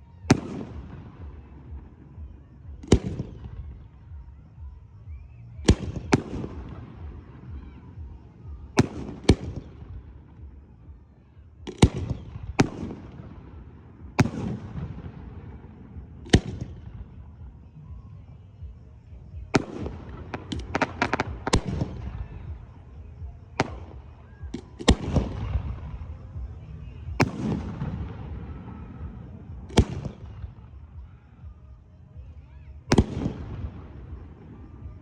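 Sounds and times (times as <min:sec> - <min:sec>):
fireworks crackling pops: 0:02.8 - 0:03.5, 0:05.6 - 0:08.2, 0:08.8 - 0:10.2, 0:11.6 - 0:13.5, 0:14.1 - 0:15.6, 0:16.2 - 0:16.9, 0:19.5 - 0:22.8, 0:23.6 - 0:30.6, 0:32.9 - 0:35.0
fireworks booming: 0:11.6 - 0:17.5, 0:18.7 - 0:31.1, 0:32.9 - 0:35.0.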